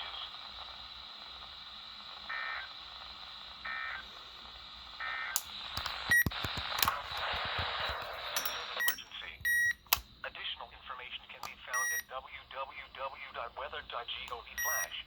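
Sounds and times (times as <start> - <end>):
crackling static with clicks: 0.0 - 15.0
steady radio hiss: 0.0 - 15.0.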